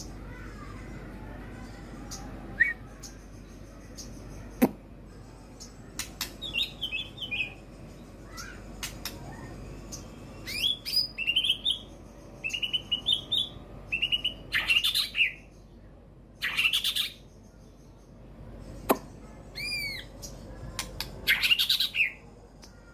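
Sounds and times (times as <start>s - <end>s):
bird chirps and trills: 0.0s - 22.9s.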